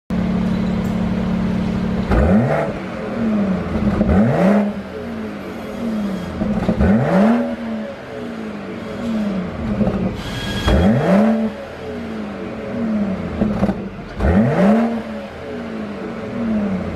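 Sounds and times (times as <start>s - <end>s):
car engine idling and revving: 0.1s - 16.9s
exhaust pops and crackles: 13.4s - 14.4s.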